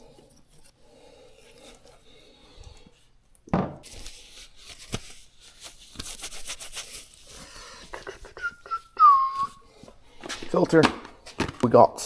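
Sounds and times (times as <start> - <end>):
rustling and crinkling: 3.7 - 8.3, 9.4 - 12.0.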